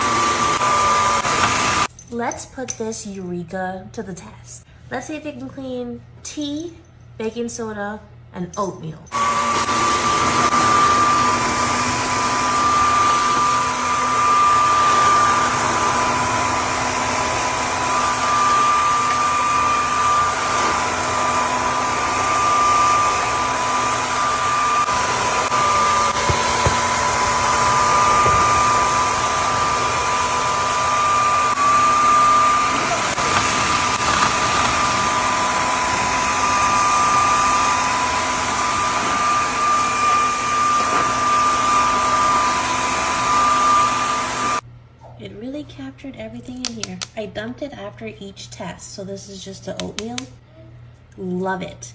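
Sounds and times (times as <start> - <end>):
vacuum cleaner whining: 0.0 - 1.9, 9.1 - 44.6.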